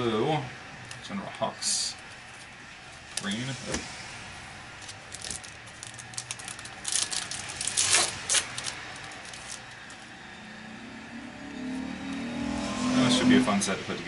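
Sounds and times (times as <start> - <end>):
wrapper crinkling: 4.8 - 10.1.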